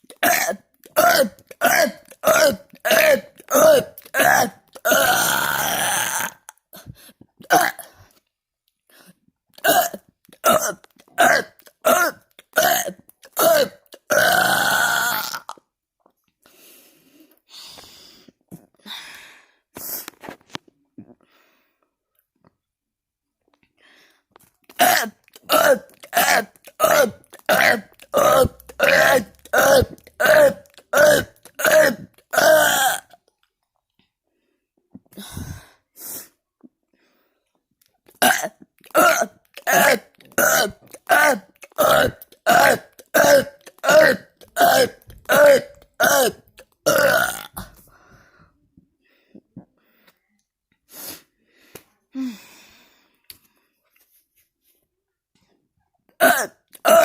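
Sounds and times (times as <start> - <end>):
person burping loudly: 0.0 - 6.7, 7.4 - 8.0, 9.6 - 15.7, 24.7 - 33.2, 38.1 - 47.8, 56.2 - 57.0.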